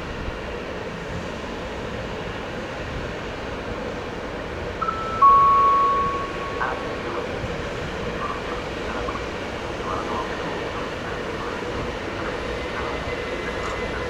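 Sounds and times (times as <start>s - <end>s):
freight train rolling: 0.0s - 14.0s.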